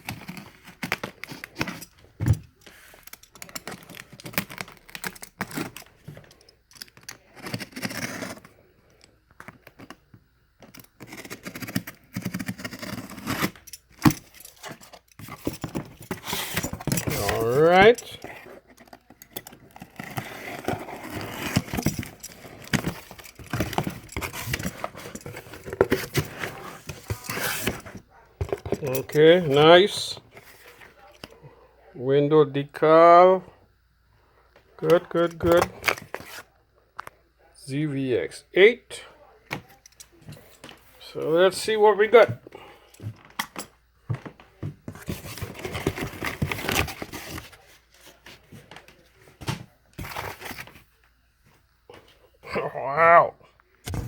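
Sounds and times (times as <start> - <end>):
cardboard rustling: 0.0 - 8.6, 10.8 - 31.1, 44.1 - 51.0
packaging crinkling: 2.7 - 8.5.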